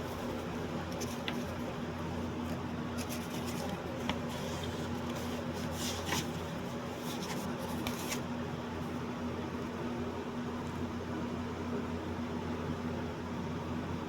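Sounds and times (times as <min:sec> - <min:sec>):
faint rustles and clicks: 0:00.0 - 0:01.8, 0:02.4 - 0:08.3
electrical hum and hiss: 0:00.0 - 0:14.0.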